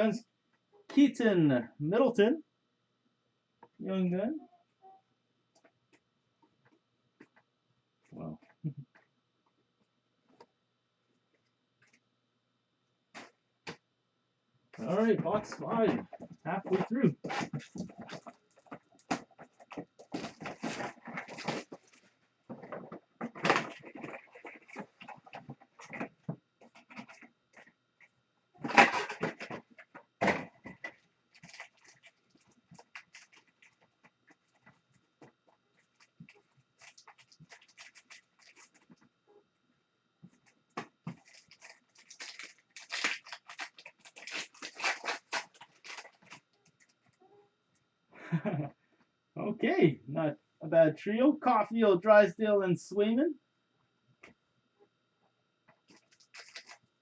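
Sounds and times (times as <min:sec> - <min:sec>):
foil wrappers crinkling and tearing: 0:14.8 - 0:22.1, 0:30.7 - 0:33.8, 0:35.8 - 0:38.9, 0:41.0 - 0:47.2, 0:55.9 - 0:56.9.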